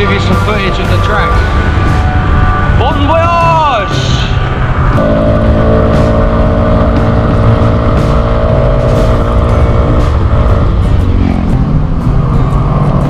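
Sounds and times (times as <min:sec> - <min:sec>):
wind rumbling on microphone: 0:00.0 - 0:13.0
motor scooter engine: 0:04.3 - 0:13.0.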